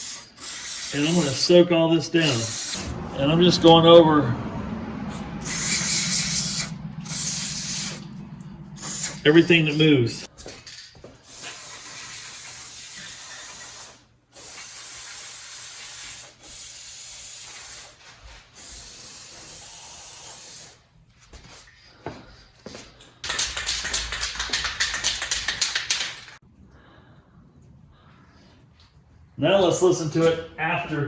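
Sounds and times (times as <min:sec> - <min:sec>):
aerosol can spraying: 0:00.0 - 0:01.5, 0:02.2 - 0:03.0, 0:05.4 - 0:08.0, 0:08.8 - 0:09.2, 0:11.3 - 0:18.0, 0:18.6 - 0:20.8.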